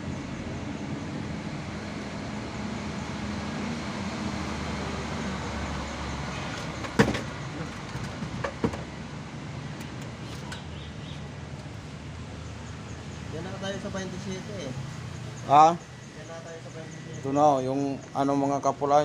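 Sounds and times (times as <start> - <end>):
vehicle engine humming: 0.0 - 19.0
sharp metallic knocks: 6.5 - 8.9.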